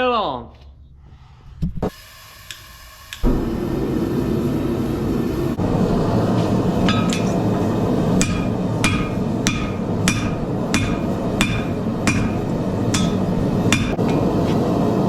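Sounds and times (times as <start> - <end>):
hammer striking steel on anvil: 6.8 - 7.5, 8.2 - 14.4.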